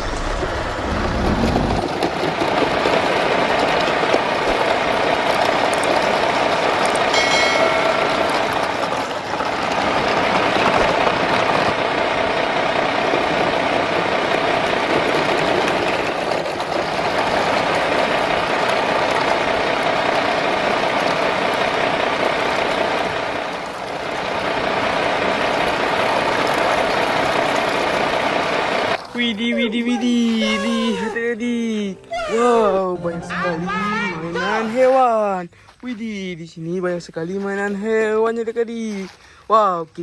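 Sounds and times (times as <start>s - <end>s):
engine running hum: 0.0s - 16.1s.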